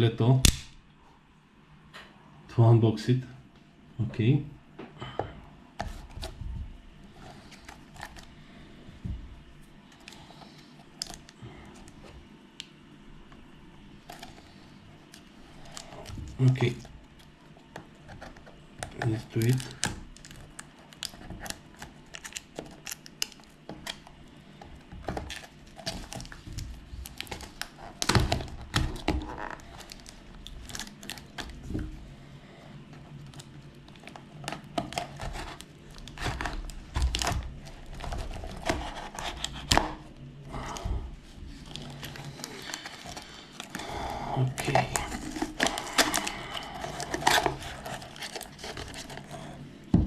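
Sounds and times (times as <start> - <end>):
packaging crinkling and tearing: 13.8 - 32.1, 32.8 - 40.9, 41.5 - 49.9.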